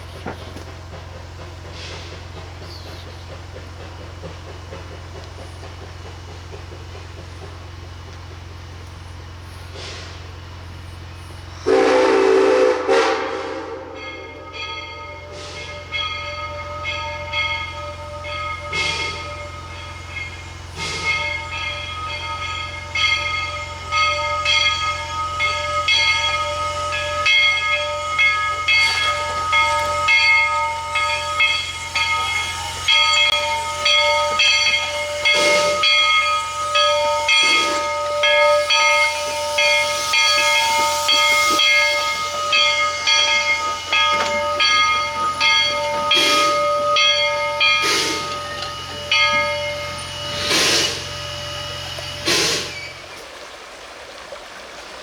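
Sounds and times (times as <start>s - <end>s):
hissing steam: 0.0s - 14.0s, 15.2s - 16.1s, 16.7s - 55.0s
wheels squealing on rails: 0.0s - 54.1s
steam whistle blast: 11.6s - 14.0s, 31.9s - 53.0s.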